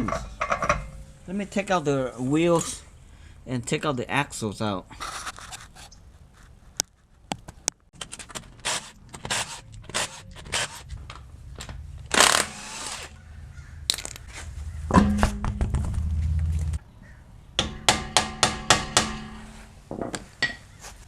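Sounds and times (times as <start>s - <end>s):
loud rasping burst: 8.6s - 10.9s, 12.1s - 13.2s.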